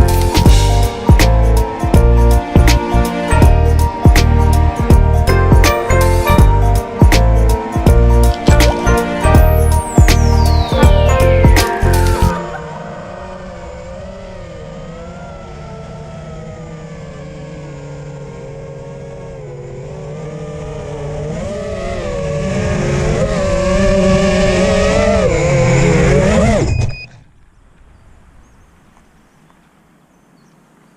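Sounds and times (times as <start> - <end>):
drone motors whining: 0.0 - 27.3.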